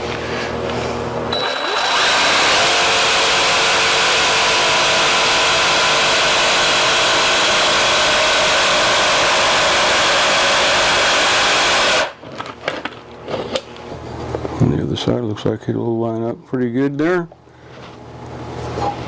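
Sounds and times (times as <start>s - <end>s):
electric jigsaw cutting wood: 1.3s - 12.2s.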